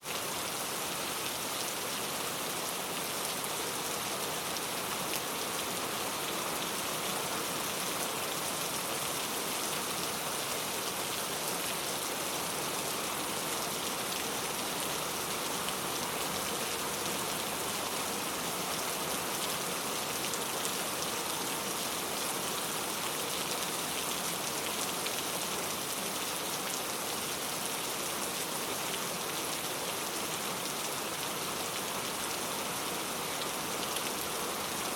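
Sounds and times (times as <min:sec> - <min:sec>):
rain pattering on a surface: 0:00.1 - 0:34.9.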